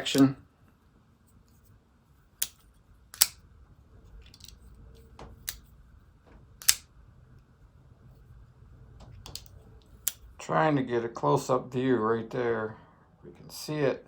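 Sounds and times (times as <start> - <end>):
folding knife blade clicking: 2.4 - 3.4, 5.4 - 5.6, 6.6 - 6.9, 9.3 - 10.2.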